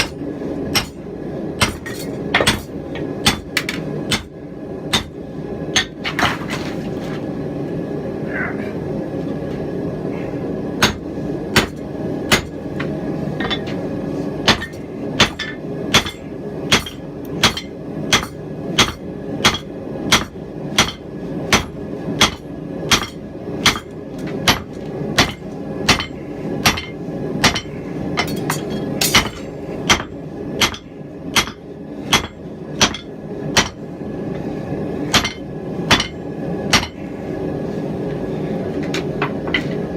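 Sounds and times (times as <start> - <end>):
steady low roar: 7.0 - 20.7.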